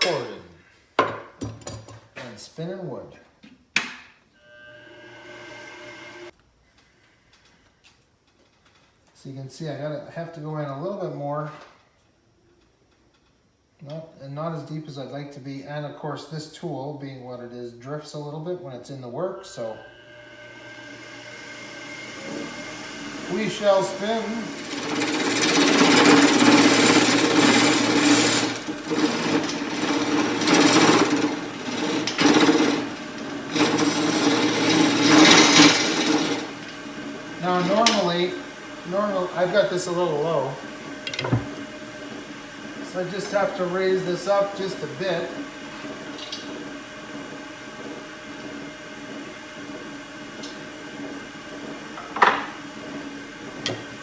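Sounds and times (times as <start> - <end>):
wood lathe humming: 4.4 - 6.4, 19.6 - 54.0
turning tool scraping wood: 21.5 - 54.0.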